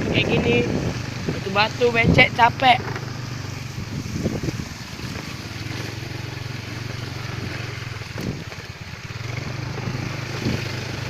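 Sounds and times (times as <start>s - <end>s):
motorcycle engine running: 0.0s - 11.0s.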